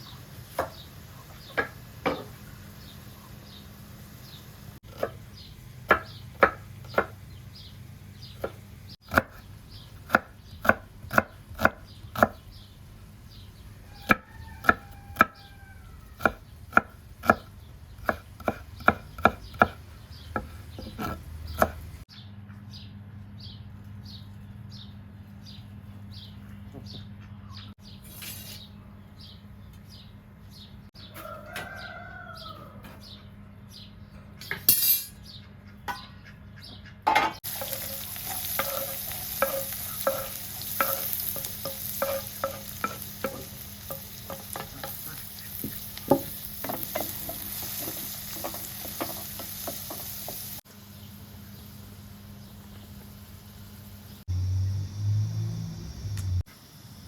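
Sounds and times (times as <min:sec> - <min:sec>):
knife chopping on cutting board: 0:05.9 - 0:07.2, 0:10.1 - 0:12.4, 0:16.2 - 0:19.8, 0:20.4 - 0:21.8
rooster crowing: 0:13.8 - 0:16.4, 0:31.0 - 0:33.0
food sizzling in hot pan: 0:37.4 - 0:55.2.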